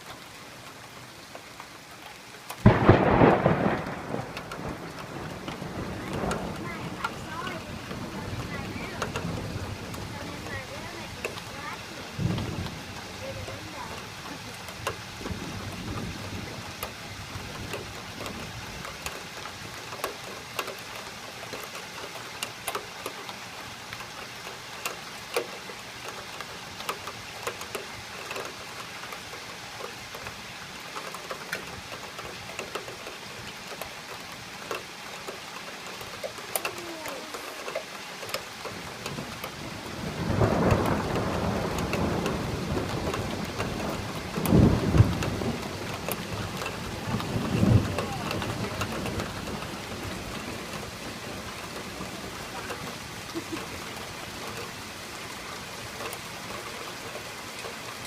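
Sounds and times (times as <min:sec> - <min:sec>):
raindrops ticking on surfaces: 0:00.0 - 0:58.0
steady rain: 0:00.0 - 0:58.0
thunder clap: 0:02.6 - 0:19.0, 0:38.8 - 0:54.6
thunder rumbling: 0:02.6 - 0:19.9, 0:38.5 - 0:57.7.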